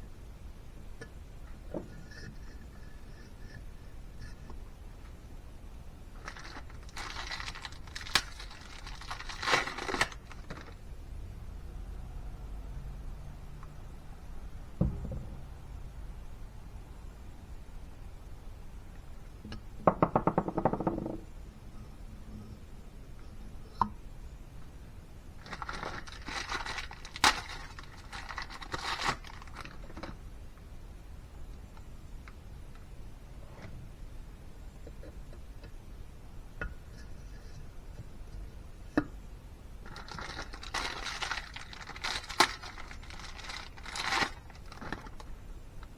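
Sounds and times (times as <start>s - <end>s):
rustling and scraping of parts: 1.5s - 5.2s, 6.2s - 10.8s, 25.4s - 30.2s, 39.8s - 45.9s.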